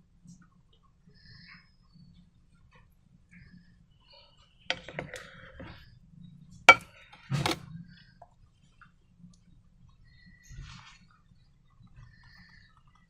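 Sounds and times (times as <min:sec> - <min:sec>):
hard objects clinking and knocking: 0:04.7 - 0:05.7, 0:06.7 - 0:07.6.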